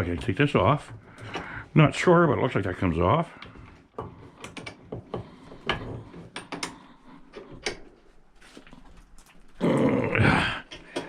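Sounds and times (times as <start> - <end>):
metal clicks of hand tools: 5.6 - 7.9.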